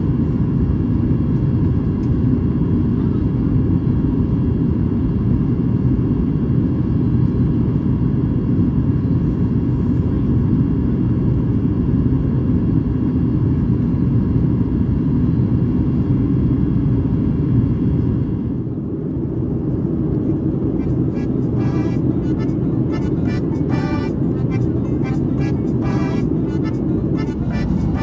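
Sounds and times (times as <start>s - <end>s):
airplane cabin rumble: 0.0s - 28.0s
faint steady tones: 20.3s - 28.0s.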